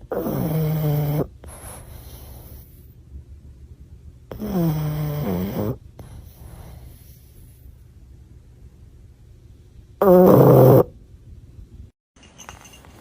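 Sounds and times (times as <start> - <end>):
dog snoring: 0.0 - 2.8, 4.3 - 7.6, 10.0 - 10.9.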